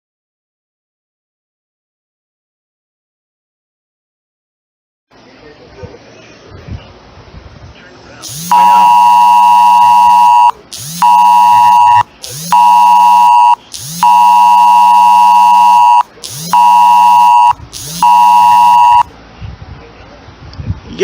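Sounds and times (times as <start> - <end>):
two-tone alert blare: 8.2 - 19.1.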